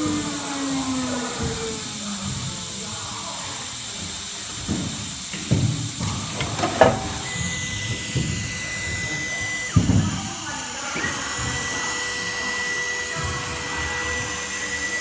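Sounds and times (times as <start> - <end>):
router machine hissing: 0.0 - 15.0
knocks: 4.8 - 7.5.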